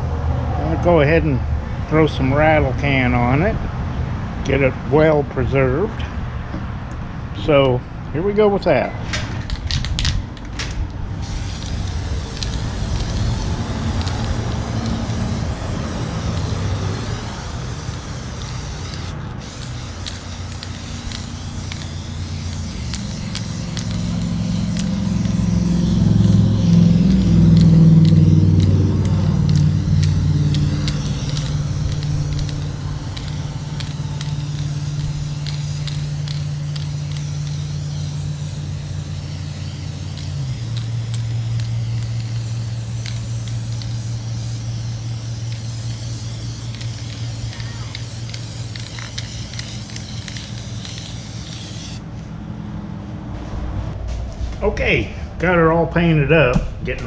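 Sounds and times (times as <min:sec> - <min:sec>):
low mechanical hum: 0:00.0 - 0:57.0
aerosol spray can hissing: 0:11.1 - 0:52.1.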